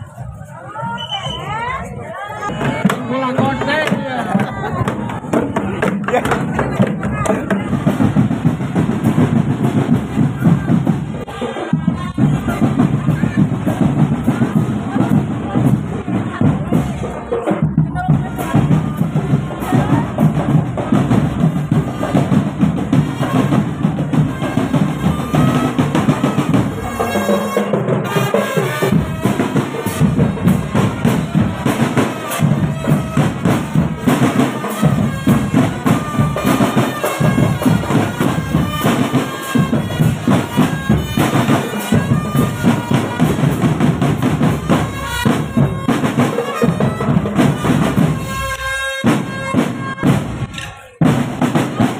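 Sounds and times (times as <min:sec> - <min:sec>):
snare and bass drums beat: 0:02.4 - 0:51.9
reedy wind instrument melody: 0:18.2 - 0:51.9.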